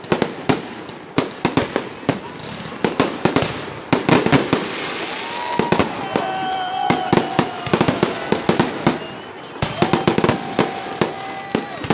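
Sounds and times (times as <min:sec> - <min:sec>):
fireworks bangs: 0:00.0 - 0:11.9
whistle-like tone: 0:08.8 - 0:10.3.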